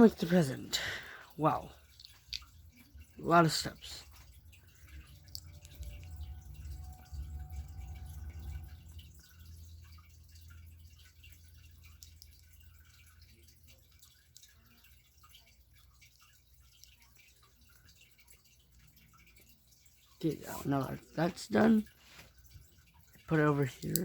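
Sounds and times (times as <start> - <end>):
low rumble: 4.8 - 9.9.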